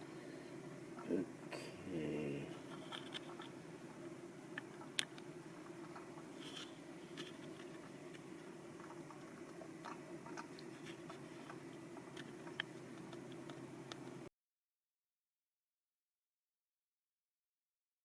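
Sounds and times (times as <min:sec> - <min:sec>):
steady low hum: 0:00.0 - 0:14.3.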